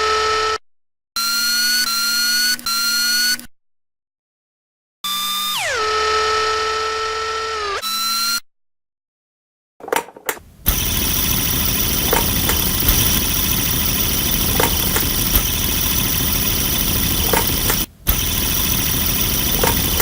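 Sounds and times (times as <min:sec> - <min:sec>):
engine sputtering and running: 0:09.9 - 0:20.0.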